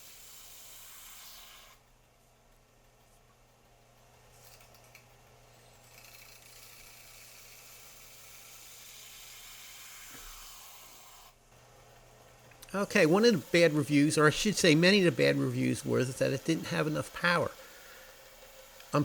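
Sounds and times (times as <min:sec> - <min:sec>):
steel blade hissing on abrasive belt: 0:00.0 - 0:01.8, 0:05.6 - 0:11.4, 0:12.7 - 0:19.0
belt sander humming: 0:12.0 - 0:19.0.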